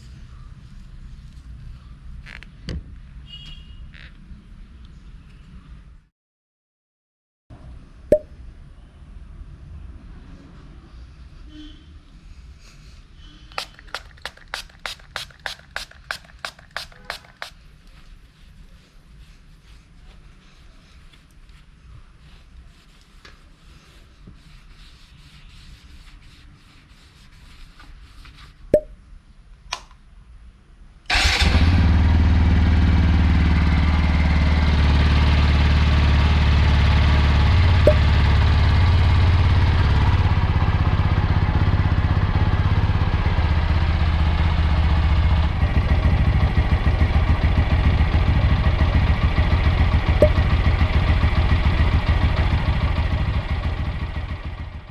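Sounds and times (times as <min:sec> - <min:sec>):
motorcycle engine idling: 0:45.5 - 0:54.9.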